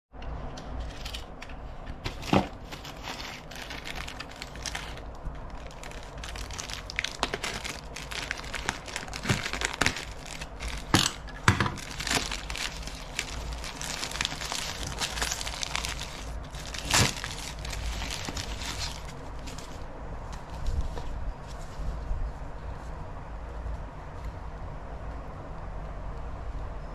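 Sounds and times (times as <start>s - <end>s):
packaging crinkling and rustling: 0.8s - 22.0s.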